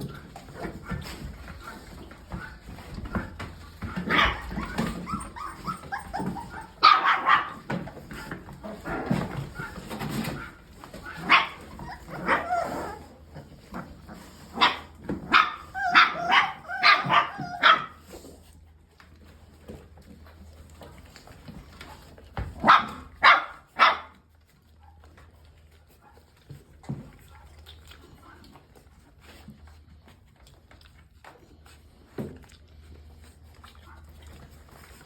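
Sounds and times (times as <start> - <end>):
puppies barking and yipping: 0.0 - 18.6, 20.3 - 28.4
puppies whimpering: 4.0 - 6.8, 11.6 - 13.1.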